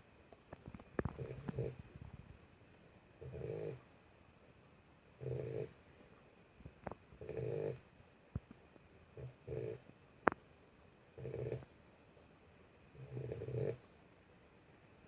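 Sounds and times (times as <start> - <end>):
puppy snoring: 1.0 - 1.9, 3.2 - 3.9, 5.2 - 5.8, 7.2 - 7.9, 9.1 - 9.9, 11.2 - 11.7, 12.9 - 13.9.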